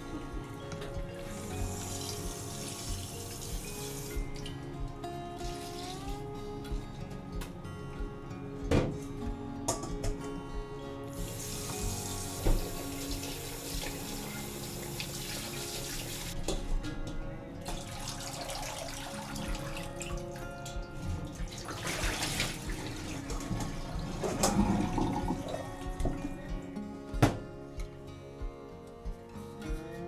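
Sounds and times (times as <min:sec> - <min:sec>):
soft background music: 0:00.0 - 0:30.0
tap water running into sink: 0:01.2 - 0:04.5, 0:11.2 - 0:16.6, 0:17.7 - 0:26.2.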